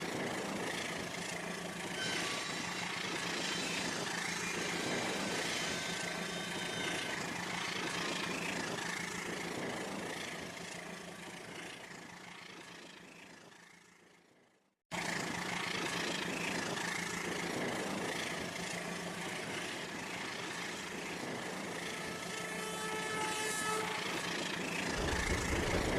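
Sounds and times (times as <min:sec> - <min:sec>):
toy train motor whirring: 0:00.2 - 0:10.2, 0:16.9 - 0:25.9.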